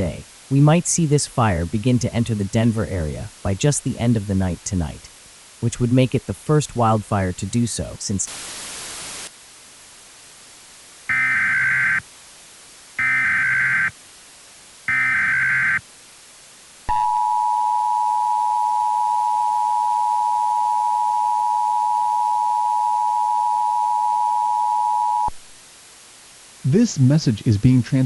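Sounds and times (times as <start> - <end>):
two-tone attention signal: 11.1 - 12.0, 13.0 - 13.9, 14.9 - 15.8, 16.9 - 25.4
warbling digital data tones: 14.9 - 15.8.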